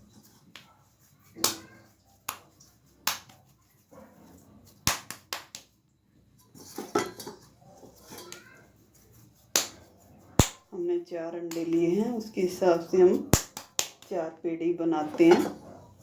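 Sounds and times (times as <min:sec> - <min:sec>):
dough handling and rustling: 0:00.0 - 0:14.4
hands slapping dough: 0:00.3 - 0:03.9, 0:04.6 - 0:05.8, 0:07.2 - 0:10.7, 0:11.4 - 0:12.3, 0:13.1 - 0:14.2.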